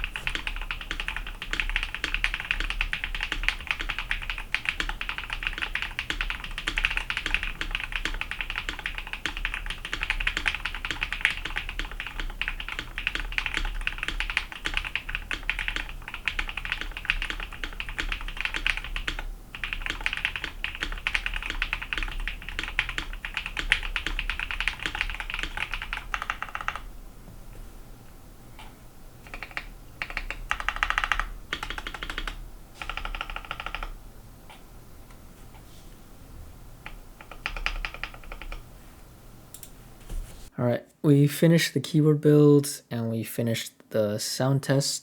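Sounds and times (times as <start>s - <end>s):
mechanical keyboard typing: 0.0s - 26.8s, 29.2s - 34.0s, 36.8s - 38.6s.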